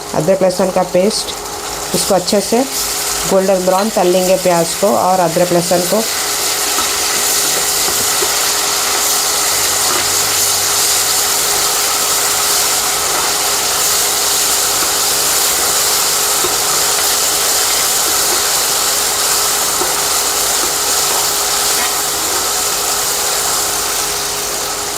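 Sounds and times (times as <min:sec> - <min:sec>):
onion frying in hot oil: 0:00.0 - 0:24.9.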